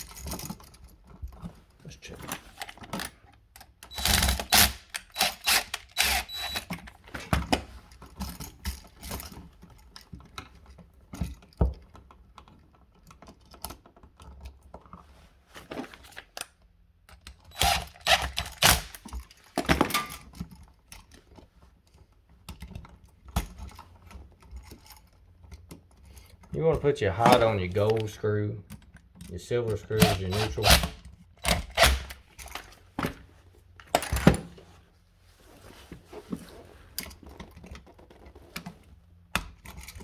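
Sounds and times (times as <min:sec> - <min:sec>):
hand tools clicking and rattling: 0:02.3 - 0:07.1, 0:17.4 - 0:21.1, 0:28.8 - 0:32.9.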